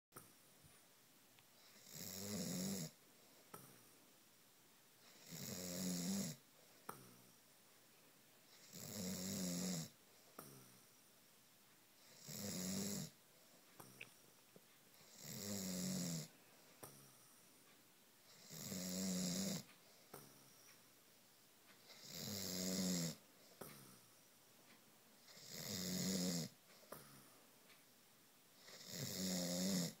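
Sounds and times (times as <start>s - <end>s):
man snoring: 1.7s - 3.0s, 5.1s - 7.3s, 8.5s - 10.8s, 12.0s - 13.2s, 15.1s - 17.1s, 18.3s - 20.3s, 21.9s - 23.8s, 25.3s - 27.1s, 28.6s - 30.0s.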